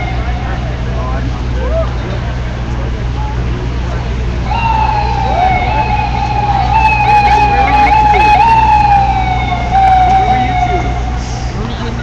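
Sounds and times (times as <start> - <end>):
siren wailing: 0.0 - 0.8, 4.4 - 11.6
low traffic rumble: 0.0 - 12.0.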